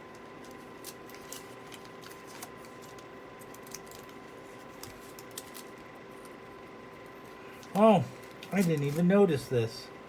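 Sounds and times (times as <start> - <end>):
paper wrapper crinkling: 0.0 - 6.4, 7.5 - 9.5
faint steady hum: 0.0 - 10.0.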